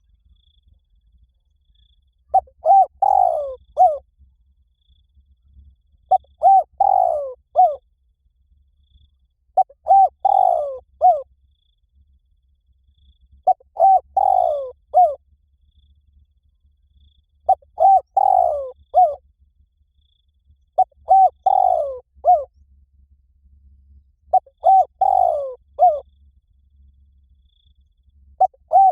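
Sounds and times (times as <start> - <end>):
dove cooing: 2.3 - 4.0, 6.1 - 7.8, 9.6 - 11.3, 13.4 - 15.2, 17.5 - 19.2, 20.8 - 22.5, 24.3 - 26.1, 28.4 - 28.9.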